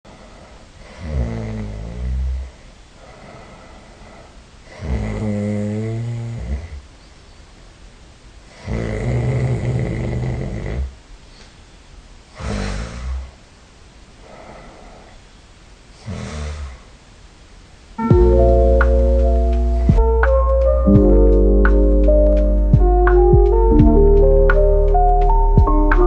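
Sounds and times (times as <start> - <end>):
quiet breathing: 0.1 - 7.2, 8.4 - 11.5, 12.3 - 13.5, 14.1 - 17.0
person snoring: 0.8 - 3.6, 4.7 - 6.8, 8.6 - 10.9, 12.4 - 13.3, 16.0 - 16.9.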